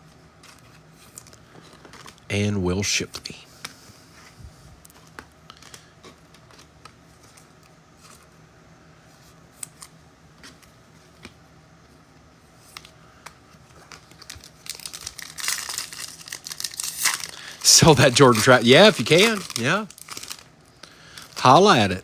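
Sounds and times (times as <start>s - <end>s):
cards and packaging rustling: 0.1s - 8.4s, 12.5s - 22.0s
wrapper crinkling: 13.6s - 22.0s.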